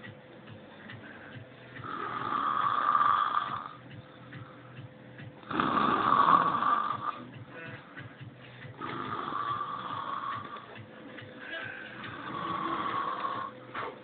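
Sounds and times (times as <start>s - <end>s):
man snoring loudly: 1.8s - 3.8s, 5.4s - 7.3s, 8.7s - 10.8s, 11.9s - 13.6s.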